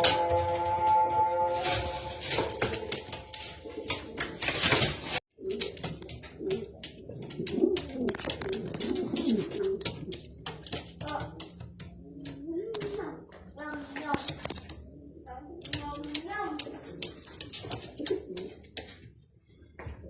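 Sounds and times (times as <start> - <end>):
sharp clicks and rustles: 2.2 - 14.9
pigeons cooing: 5.4 - 10.6.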